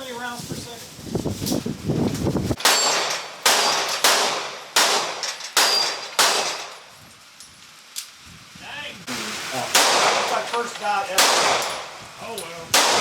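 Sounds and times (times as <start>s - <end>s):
gunshots: 2.6s - 6.7s, 9.7s - 12.0s, 12.7s - 13.0s
steel targets ringing clang: 2.6s - 6.8s.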